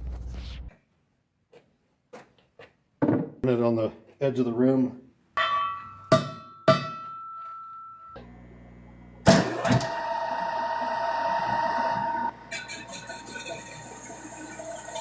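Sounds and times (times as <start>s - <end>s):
sharp ringing strikes on metal: 5.4s - 8.2s.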